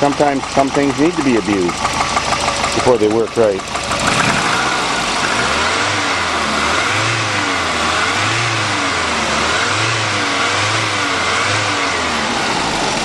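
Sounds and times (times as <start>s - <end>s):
turbo engine revving: 0.0s - 13.0s.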